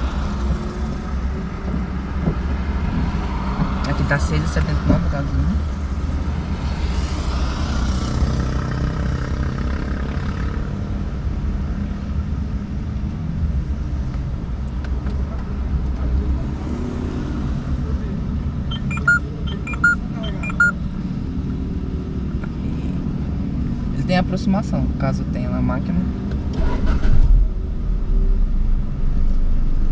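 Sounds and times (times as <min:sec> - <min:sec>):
short electronic beeps: 0:18.7 - 0:20.8.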